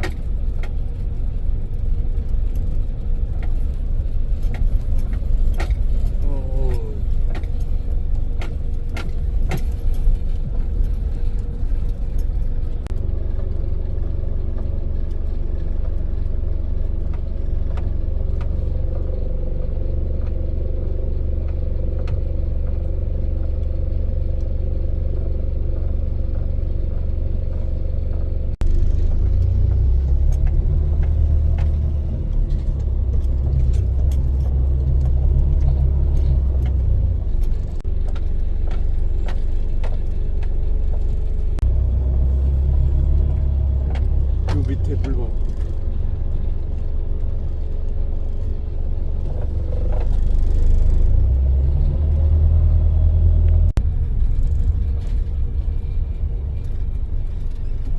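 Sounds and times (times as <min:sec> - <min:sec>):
small clicks and rattles: 0:00.0 - 0:13.6, 0:14.5 - 0:41.6, 0:42.8 - 0:51.4
car interior road rumble: 0:00.0 - 0:57.9.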